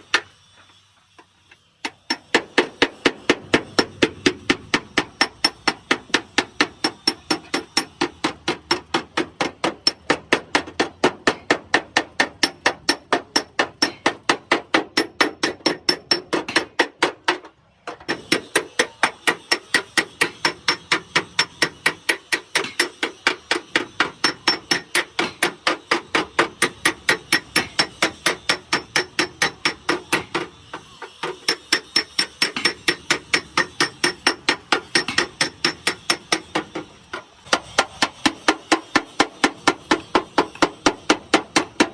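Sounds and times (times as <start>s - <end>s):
hammer beating on metal: 1.8s - 17.5s, 18.1s - 36.9s, 37.5s - 41.9s.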